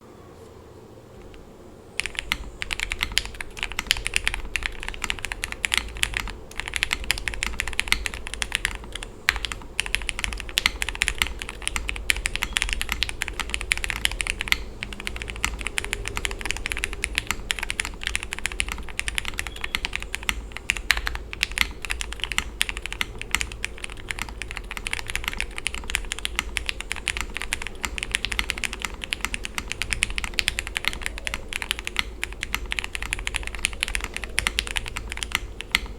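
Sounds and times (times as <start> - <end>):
typing on mechanical keyboard: 2.0 - 35.9.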